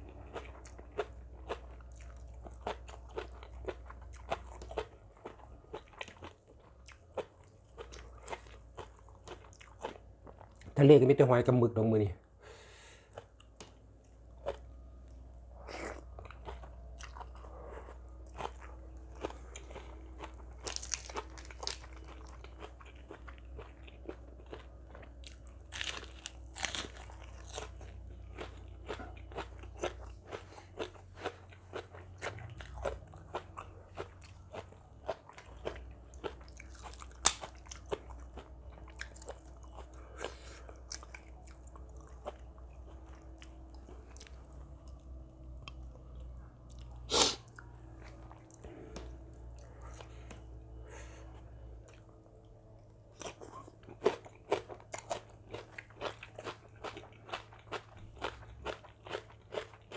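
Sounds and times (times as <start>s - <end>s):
person chewing and crunching: 0.0s - 10.8s, 13.1s - 59.9s
steady low hum: 0.0s - 59.9s.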